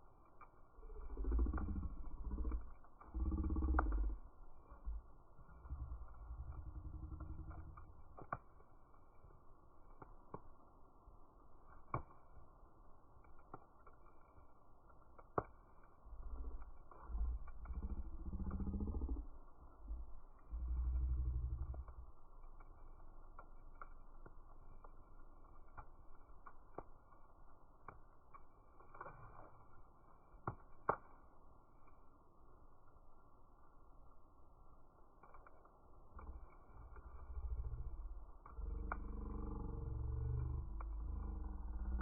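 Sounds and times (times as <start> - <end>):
low rumble: 0.0 - 8.2, 16.0 - 25.5, 35.9 - 42.0
fire pops: 0.0 - 42.0
wood fire crackling: 0.0 - 42.0.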